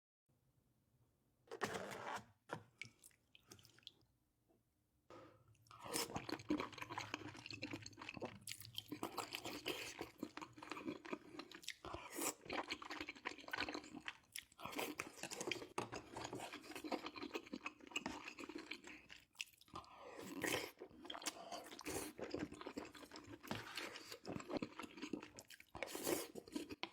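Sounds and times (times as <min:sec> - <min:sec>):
close-up mouth chewing: 0:05.6 - 0:26.9.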